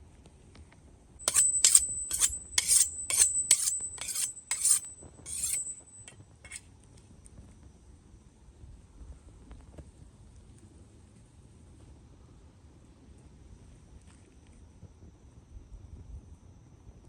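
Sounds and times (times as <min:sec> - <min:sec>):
high metallic ring: 0:01.2 - 0:06.6
metal scraping: 0:01.2 - 0:06.6.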